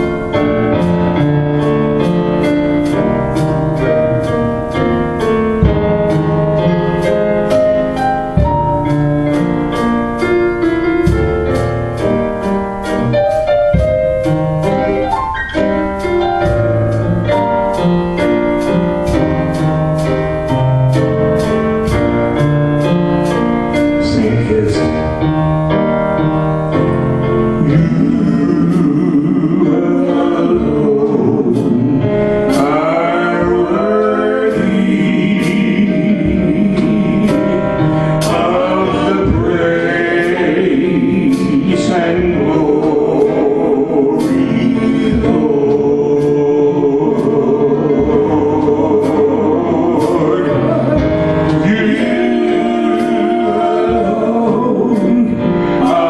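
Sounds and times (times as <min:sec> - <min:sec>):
steady ticking beat: 0:00.0 - 0:56.0
person singing: 0:24.0 - 0:25.3, 0:27.5 - 0:56.0.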